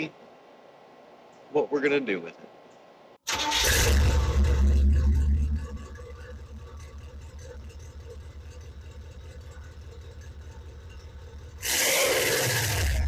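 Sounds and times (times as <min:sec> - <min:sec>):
engine idling: 0:03.3 - 0:13.0.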